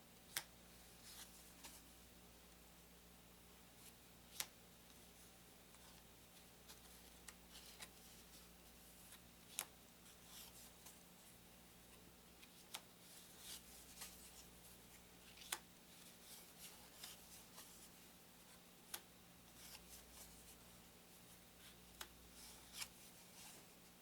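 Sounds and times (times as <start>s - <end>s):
paper cards sliding and rubbing: 12.4s - 18.0s, 19.5s - 20.6s, 21.6s - 23.8s.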